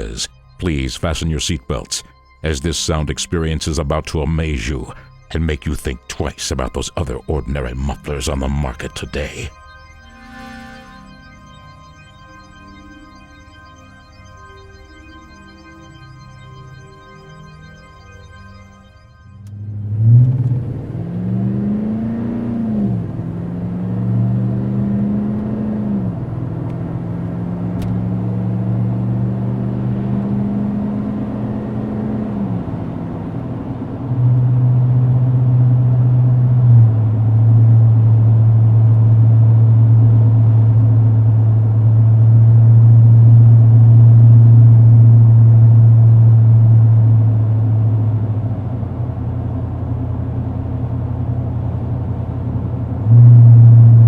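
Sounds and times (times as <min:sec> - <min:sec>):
car engine revving: 0:19.4 - 0:54.0.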